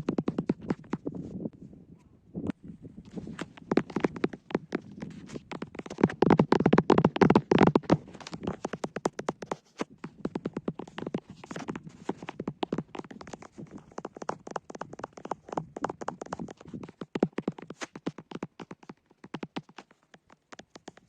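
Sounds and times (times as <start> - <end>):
fast stick tapping: 5.5 - 9.6.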